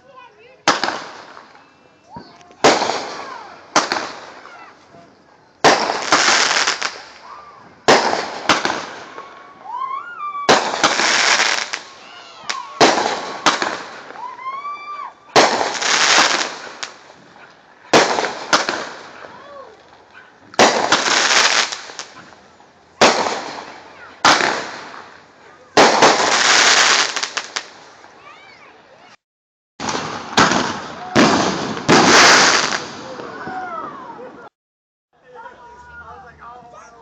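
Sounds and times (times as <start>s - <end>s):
fireworks bangs: 0.4s - 22.4s, 23.0s - 28.3s, 29.8s - 34.5s
fireworks crackling hiss: 5.6s - 9.4s, 10.5s - 14.3s, 15.3s - 28.3s, 29.8s - 33.6s.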